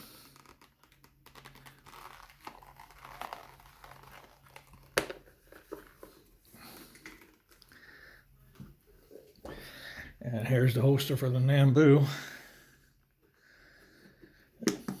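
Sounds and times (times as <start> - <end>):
holster rustling and crinkling: 0.1 - 9.6.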